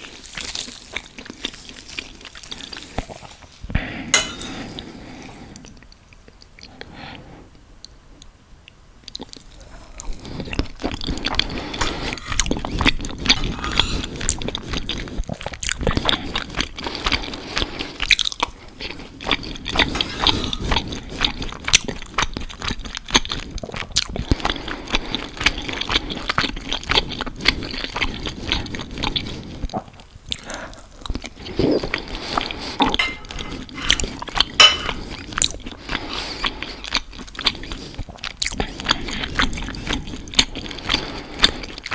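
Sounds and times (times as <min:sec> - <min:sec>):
biting and chewing food: 0:00.0 - 0:04.9, 0:09.0 - 0:41.9
wet mouth sounds: 0:09.1 - 0:41.9.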